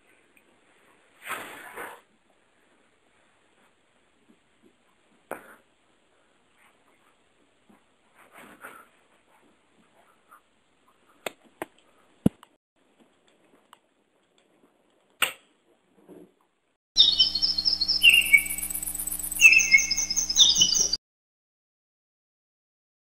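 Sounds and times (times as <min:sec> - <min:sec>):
low steady hum: 0:17.0 - 0:21.0
songbird trilling: 0:17.0 - 0:21.0.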